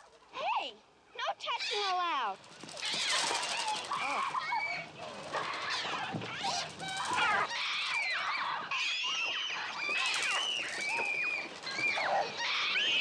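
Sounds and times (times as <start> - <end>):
gulls shrieking: 2.7 - 13.0.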